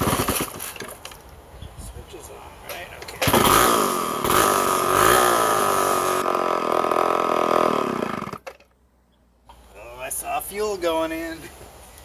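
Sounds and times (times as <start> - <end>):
chainsaw running unevenly: 0.0 - 0.8, 3.2 - 8.5.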